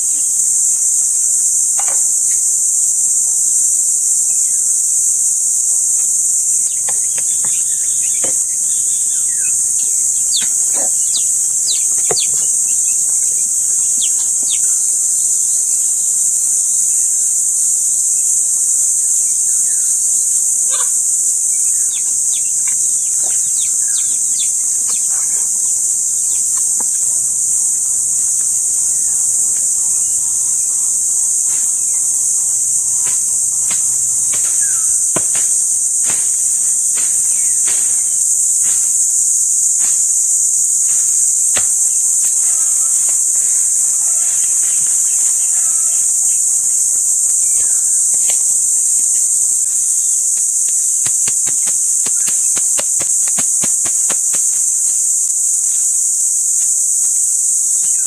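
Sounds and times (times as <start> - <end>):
insect chorus: 0.0 - 58.0
sharp knocks: 1.8 - 2.4, 33.0 - 39.0.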